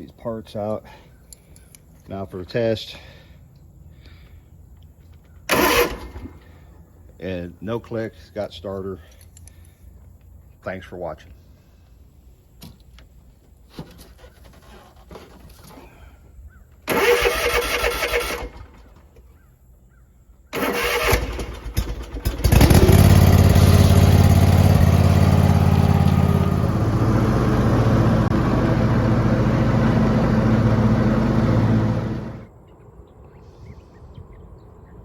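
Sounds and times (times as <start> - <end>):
starter motor cranking: 5.5 - 6.5, 16.9 - 18.8, 20.6 - 32.5
mower engine running: 5.5 - 6.6, 16.9 - 18.9, 20.6 - 32.5.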